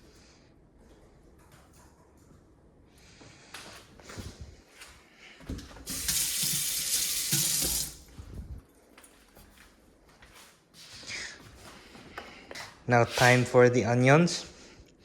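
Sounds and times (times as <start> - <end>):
tap running into sink: 5.8 - 8.0.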